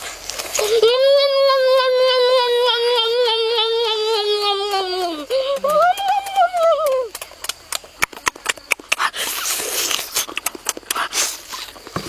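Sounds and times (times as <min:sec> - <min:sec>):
high wailing voice: 0:00.6 - 0:07.2.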